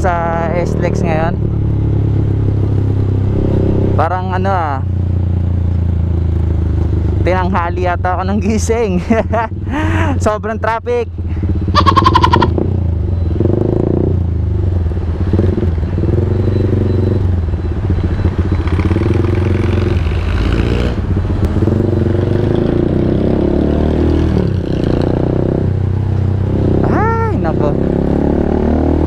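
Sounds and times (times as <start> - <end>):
motorcycle engine running: 11.1 - 23.5.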